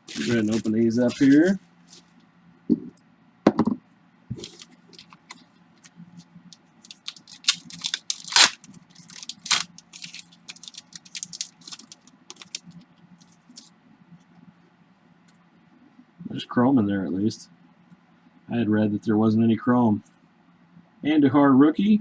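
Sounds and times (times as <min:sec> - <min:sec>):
wrappers crinkling and tearing: 0:00.0 - 0:02.0, 0:06.8 - 0:13.7
cards clicking and scraping: 0:00.1 - 0:02.0, 0:06.9 - 0:13.7.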